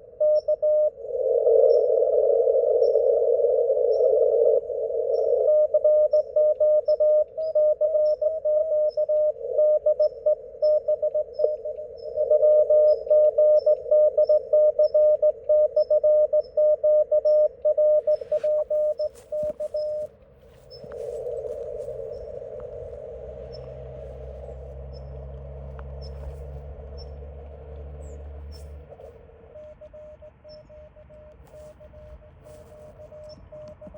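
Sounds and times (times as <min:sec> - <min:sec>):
morse code tone: 0:00.0 - 0:27.3, 0:28.5 - 0:33.9
radio receiver hiss: 0:00.6 - 0:06.5, 0:17.8 - 0:26.7
clicks: 0:32.7 - 0:33.9.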